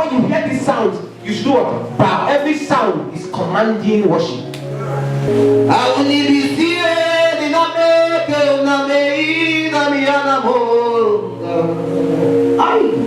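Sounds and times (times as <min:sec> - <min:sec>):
sustained instrumental chords: 0:00.9 - 0:13.0
person singing wordless phrases: 0:05.7 - 0:13.0.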